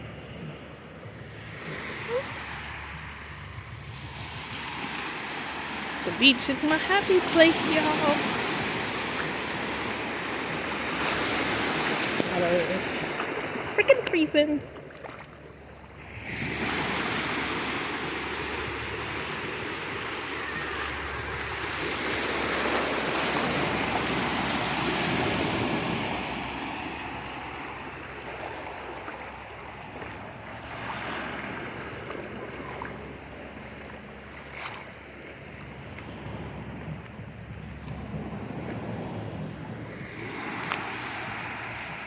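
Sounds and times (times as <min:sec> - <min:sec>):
ocean surf washing ashore: 0:00.0 - 0:42.0.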